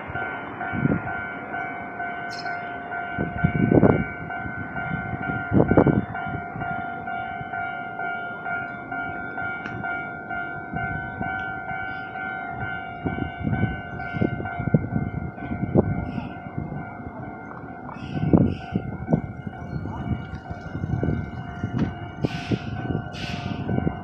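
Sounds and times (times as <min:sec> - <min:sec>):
level crossing warning bell: 0:00.0 - 0:24.0
train passing: 0:00.0 - 0:24.0
train wheels thumping rail joints: 0:20.1 - 0:24.0.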